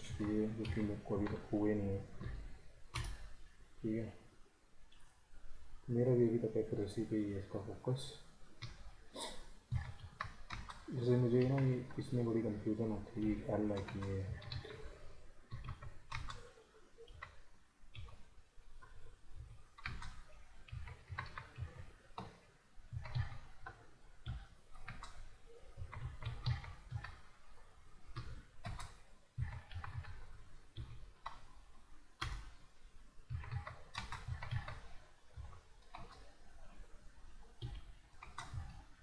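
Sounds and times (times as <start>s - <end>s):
typing on computer keyboard: 0.1s - 3.2s, 9.7s - 18.2s, 18.8s - 27.4s, 28.1s - 31.6s, 33.3s - 36.5s, 37.6s - 38.8s.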